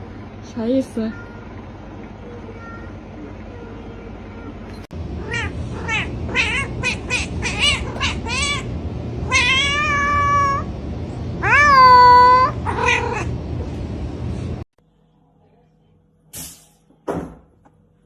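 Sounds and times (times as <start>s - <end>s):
steady low hum: 0.0s - 16.9s
cat meowing: 5.2s - 10.7s, 11.4s - 13.3s.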